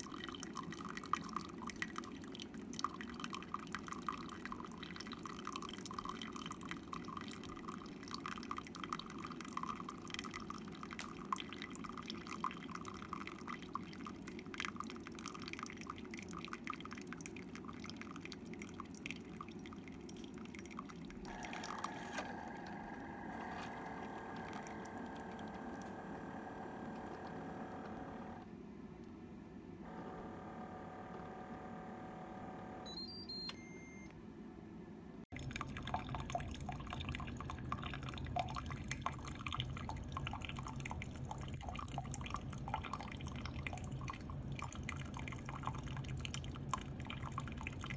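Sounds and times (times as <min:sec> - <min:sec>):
coffee dripping into cup: 0:00.0 - 0:28.3, 0:35.3 - 0:47.9
coffee maker dispensing coffee: 0:21.3 - 0:28.5.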